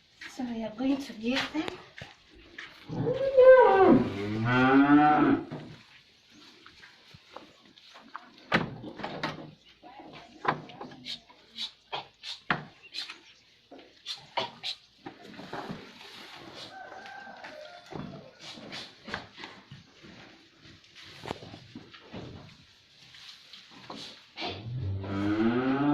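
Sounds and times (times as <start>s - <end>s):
cow mooing: 2.9s - 5.5s, 24.6s - 25.9s
rustles and knocks: 17.5s - 24.3s.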